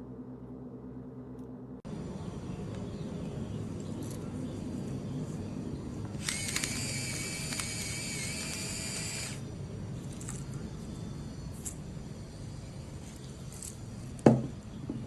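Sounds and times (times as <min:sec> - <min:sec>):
electric grinder motor whining: 0:06.1 - 0:09.4.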